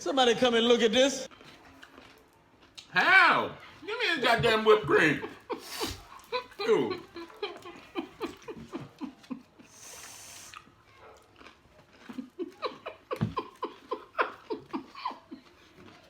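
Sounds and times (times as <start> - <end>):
person laughing: 4.3 - 9.8, 12.1 - 15.5.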